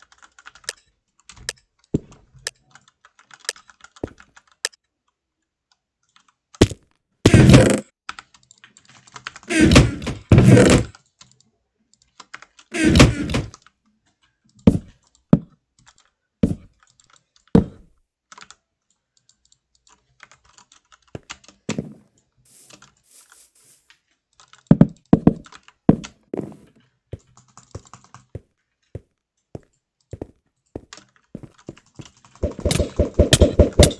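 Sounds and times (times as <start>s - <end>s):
irregular clicks and thunks: 12.8s - 13.5s, 32.4s - 33.9s.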